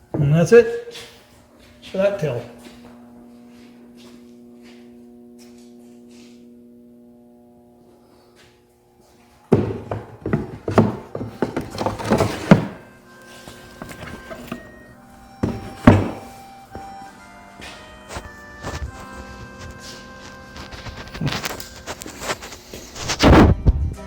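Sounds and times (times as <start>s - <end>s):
wooden tools knocking and clattering: 9.5s - 12.8s, 13.7s - 14.7s, 15.4s - 16.3s.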